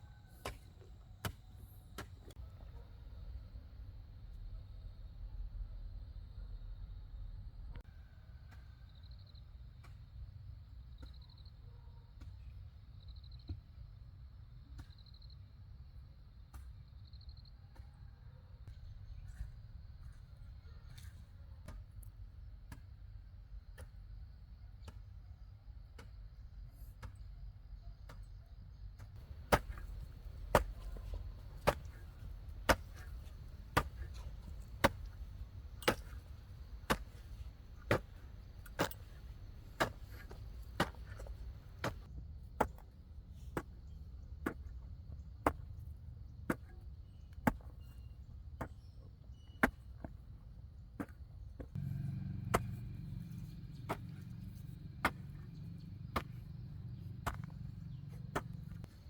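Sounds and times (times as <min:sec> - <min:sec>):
hand tool chopping: 0:29.2 - 0:42.1, 0:51.8 - 0:56.4, 0:57.2 - 0:57.6.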